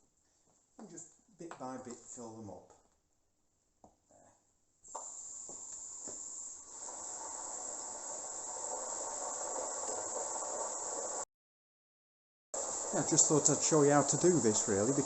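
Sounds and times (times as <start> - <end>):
water rushing through hose: 5.0 - 11.2, 12.6 - 15.0.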